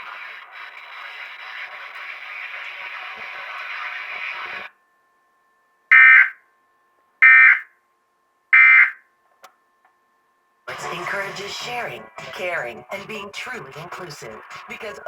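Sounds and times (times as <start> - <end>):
buzzy data bursts: 10.7 - 15.0.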